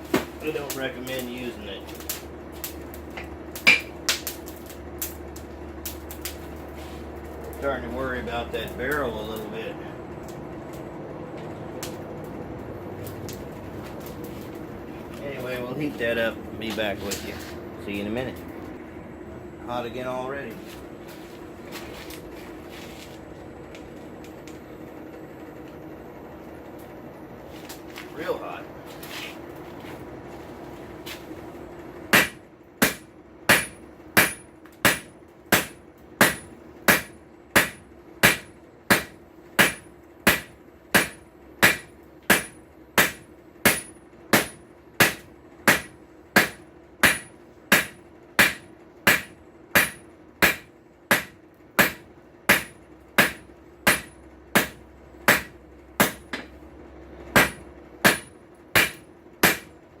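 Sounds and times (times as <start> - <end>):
steady hum: 0.0 - 60.0
hammer striking steel on anvil: 3.2 - 4.3, 32.1 - 56.6, 57.3 - 59.7.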